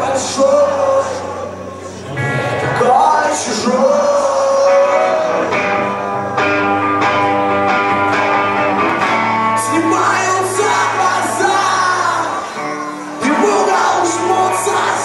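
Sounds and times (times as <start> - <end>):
live rock band playing: 0.0 - 15.0
guitar chords: 1.5 - 15.0
person singing and shouting: 9.6 - 15.0.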